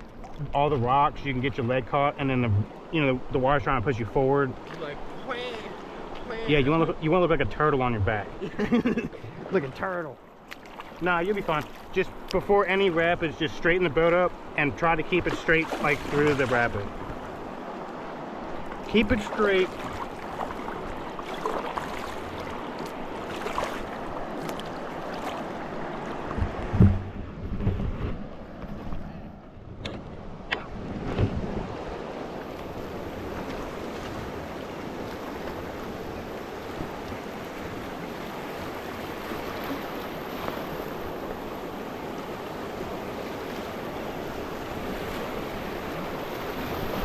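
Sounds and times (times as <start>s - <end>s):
river water rushing: 0.0s - 8.5s, 9.2s - 26.7s, 31.7s - 47.0s.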